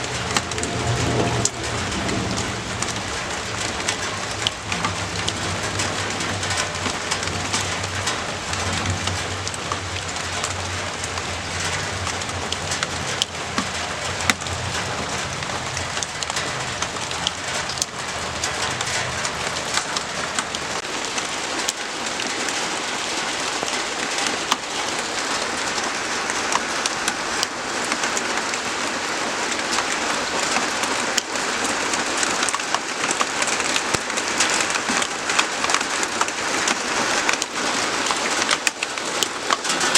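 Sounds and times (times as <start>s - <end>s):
low rumble: 0.0s - 20.8s
rain falling: 0.0s - 39.9s
raindrops hitting a surface: 0.0s - 39.9s.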